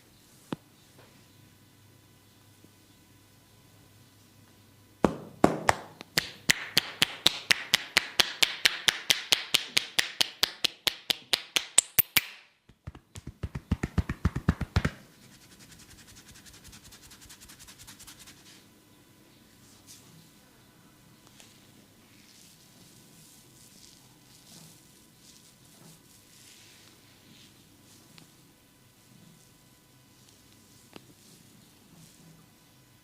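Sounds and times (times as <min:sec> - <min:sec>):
hands tapping body in massage: 0:05.0 - 0:15.1
faint rapid patter: 0:12.8 - 0:18.4.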